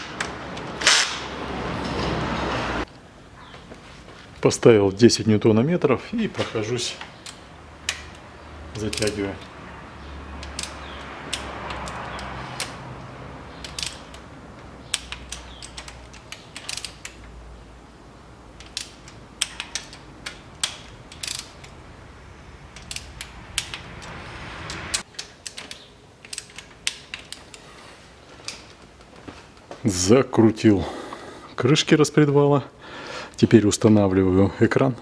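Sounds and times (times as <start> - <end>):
torque wrench ratchet clicking: 13.6 - 14.2, 14.9 - 17.2, 18.6 - 21.8, 22.7 - 25.6.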